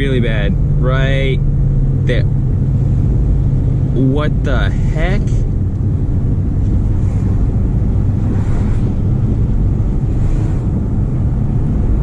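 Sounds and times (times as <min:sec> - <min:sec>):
car engine rumble: 0:00.0 - 0:12.0
road and wind noise: 0:00.0 - 0:12.0.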